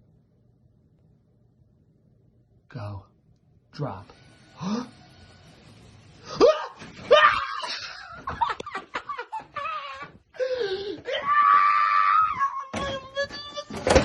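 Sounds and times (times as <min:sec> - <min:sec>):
man laughing: 0:07.4 - 0:10.8.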